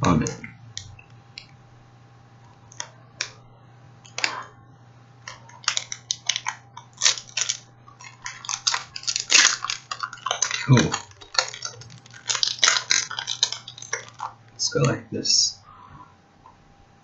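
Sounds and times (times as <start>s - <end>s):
faint steady hum: 0.0s - 17.0s
plastic wrapper crinkling: 4.0s - 4.5s, 5.2s - 14.9s.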